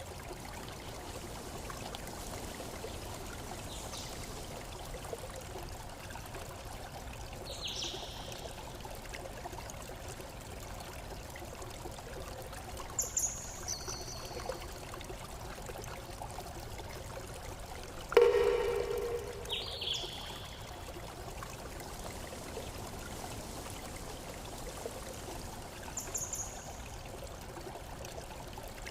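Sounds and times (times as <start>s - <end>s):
loud ringing sound: 18.2s - 20.4s
high chirps: 18.2s - 20.7s
water running: 18.2s - 26.1s.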